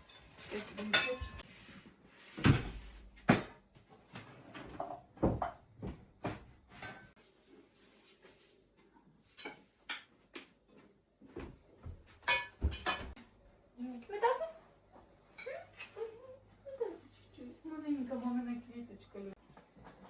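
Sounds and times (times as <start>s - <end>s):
dishes and forks clinking: 0.0s - 1.4s, 12.2s - 13.2s.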